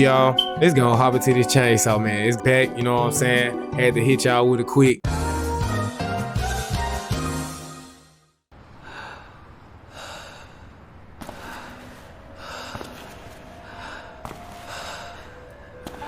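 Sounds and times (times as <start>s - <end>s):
heavy rhythmic breathing: 8.8s - 16.0s.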